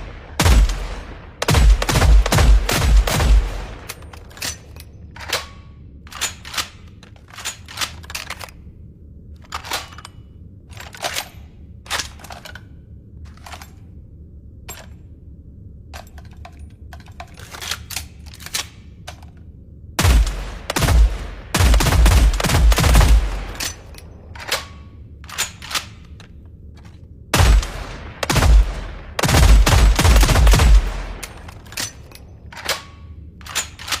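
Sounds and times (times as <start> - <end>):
machine-gun fire bursts: 0.0 - 3.9, 20.0 - 23.6, 27.4 - 31.3.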